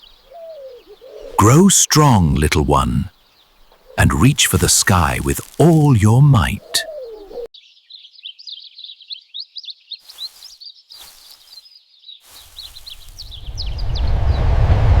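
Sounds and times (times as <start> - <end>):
small birds chirping: 6.9 - 14.1
low rumbling noise: 13.2 - 15.0.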